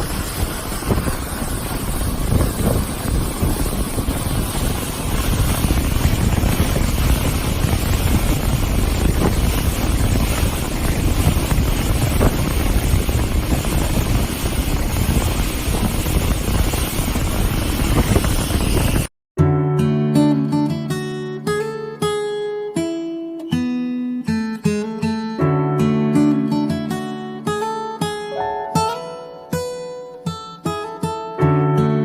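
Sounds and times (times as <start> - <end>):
boat engine running: 0.0 - 19.1
water rushing past hull: 0.0 - 19.1
wind buffeting microphone: 0.0 - 19.1.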